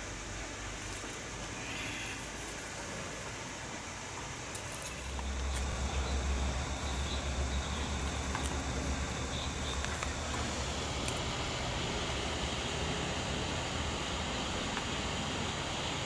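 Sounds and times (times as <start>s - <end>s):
steady outdoor hiss: 0.0s - 16.0s
fluttering low rumble: 5.0s - 11.1s.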